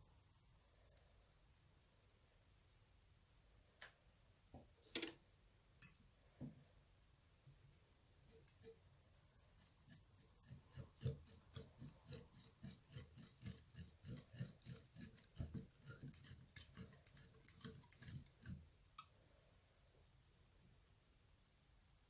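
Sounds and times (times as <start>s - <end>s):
slime being worked: 8.2s - 19.1s.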